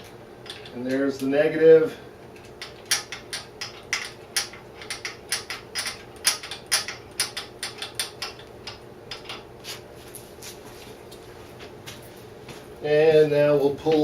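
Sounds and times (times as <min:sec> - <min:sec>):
hand tools clicking on metal parts: 0:02.4 - 0:09.4.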